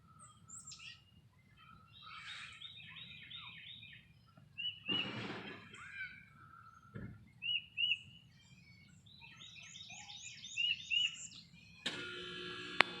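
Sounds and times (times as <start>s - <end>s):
songbirds singing: 0.0s - 13.0s
steady hum with held tones: 11.9s - 13.0s.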